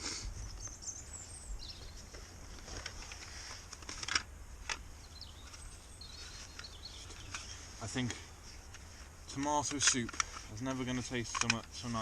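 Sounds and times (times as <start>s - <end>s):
faint bird chirps: 0.4s - 2.3s, 5.0s - 7.9s
gear clicks and knocks: 8.7s - 12.0s.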